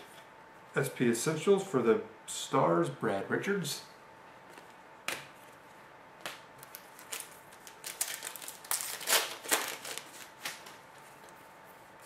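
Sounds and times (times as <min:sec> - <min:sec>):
foil wrapper crinkling: 0:06.6 - 0:11.4.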